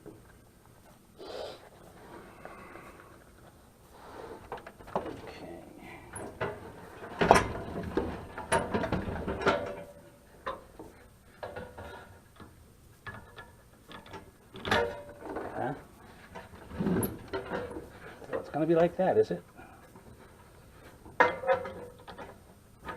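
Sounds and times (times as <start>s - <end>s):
metal parts and tools clanking: 6.1s - 10.7s, 13.1s - 18.9s, 21.0s - 22.9s.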